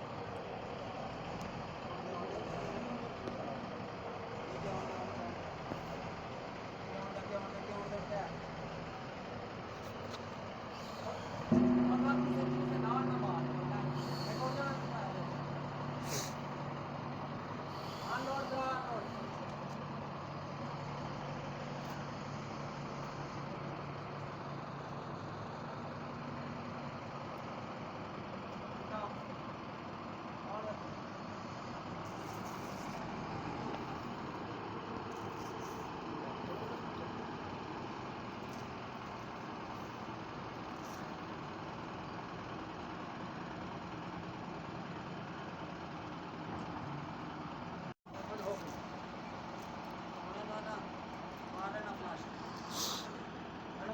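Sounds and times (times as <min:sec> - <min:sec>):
large engine humming: 0:00.0 - 0:48.0
heavy machinery droning: 0:10.6 - 0:20.5.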